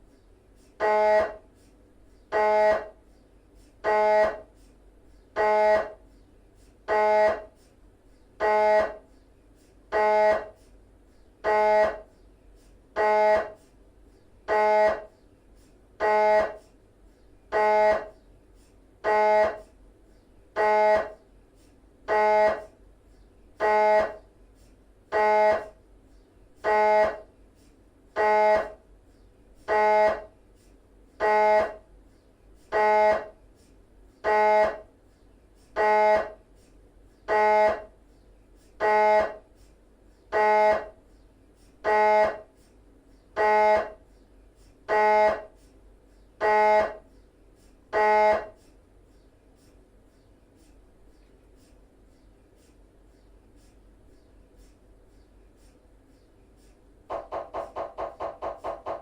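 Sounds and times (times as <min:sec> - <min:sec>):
mri scanner pulsing buzz: 0:08.4 - 0:09.2, 0:09.9 - 0:10.6, 0:12.9 - 0:13.7, 0:14.4 - 0:15.2, 0:16.0 - 0:16.8, 0:19.0 - 0:19.7.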